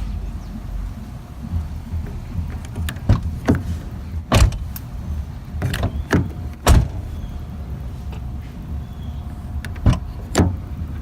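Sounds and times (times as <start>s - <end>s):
steady low rumble: 0.0s - 11.0s
car door handle clunks and clicks: 2.4s - 4.9s, 5.6s - 7.0s, 9.6s - 10.6s.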